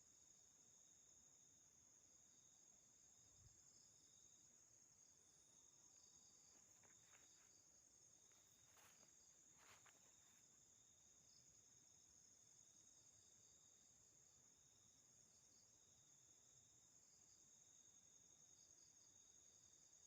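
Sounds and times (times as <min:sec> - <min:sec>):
crickets chirring: 0:00.0 - 0:20.0
soft rustles: 0:06.5 - 0:07.6, 0:08.3 - 0:10.5.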